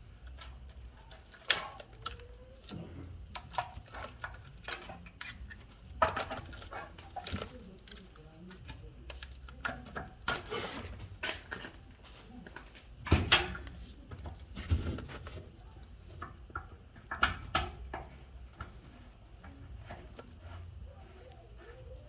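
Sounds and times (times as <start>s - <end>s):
tools clicking and clanking: 0.0s - 20.7s.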